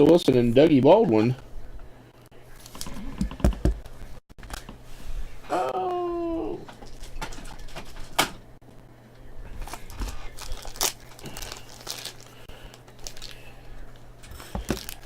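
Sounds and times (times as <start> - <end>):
plastic packaging crinkling: 9.6 - 15.0.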